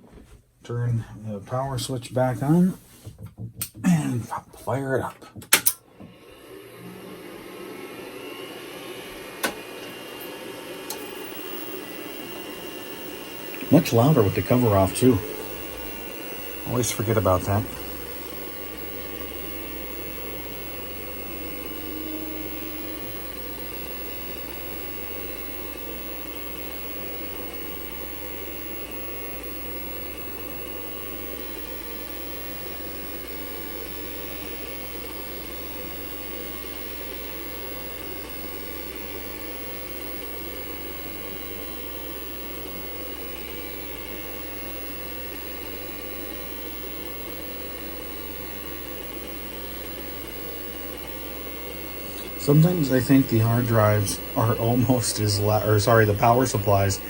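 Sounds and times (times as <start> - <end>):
computer fans and hard drive whir: 5.4 - 57.0
short tone: 21.6 - 24.1.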